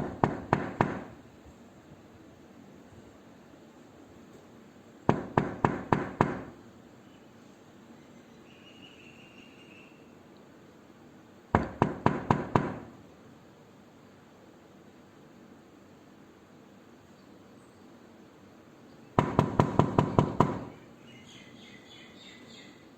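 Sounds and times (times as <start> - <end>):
knocking on a door: 0.0 - 1.2, 5.1 - 6.6, 11.6 - 13.0, 19.2 - 20.8.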